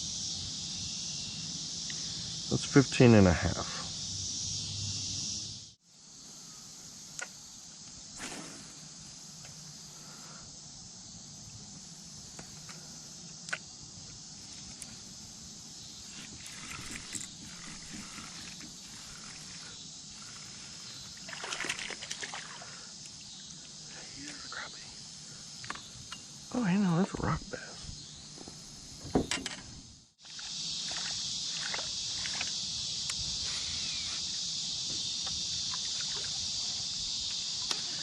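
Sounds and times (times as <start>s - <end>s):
insect chirr: 0.0s - 38.0s
splashing and rustle: 16.1s - 22.9s, 30.2s - 32.6s, 35.5s - 36.8s
water sloshing: 21.2s - 22.7s.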